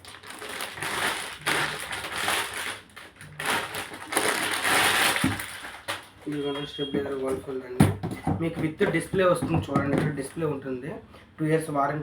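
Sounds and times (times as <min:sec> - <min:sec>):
packaging crinkling: 0:00.0 - 0:07.3.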